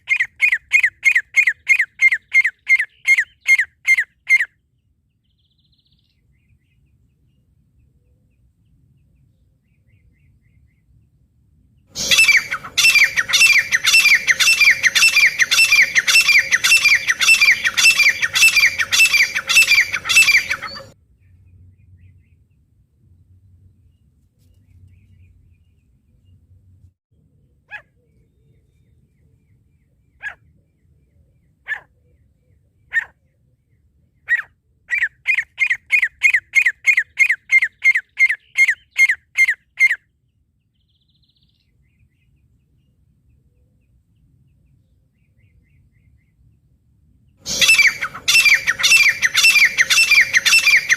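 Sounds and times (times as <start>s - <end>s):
bird calling harsh repeated notes: 0.0s - 4.5s, 11.9s - 21.0s, 47.4s - 50.9s.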